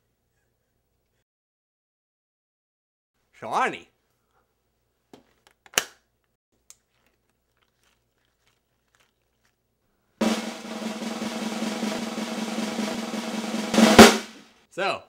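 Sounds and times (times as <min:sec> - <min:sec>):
snare drum roll: 0:10.2 - 0:14.4.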